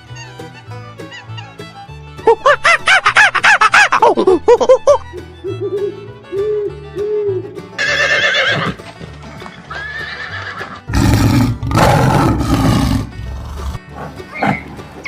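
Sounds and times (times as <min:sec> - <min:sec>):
background music: 0:00.0 - 0:15.0
horse neighing: 0:07.8 - 0:08.8, 0:09.7 - 0:14.7
loud rough noise: 0:10.9 - 0:13.8.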